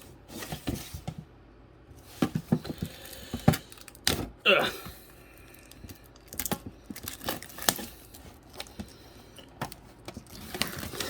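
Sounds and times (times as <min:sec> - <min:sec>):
plastic packaging crinkling: 0:02.8 - 0:04.1, 0:05.1 - 0:11.0.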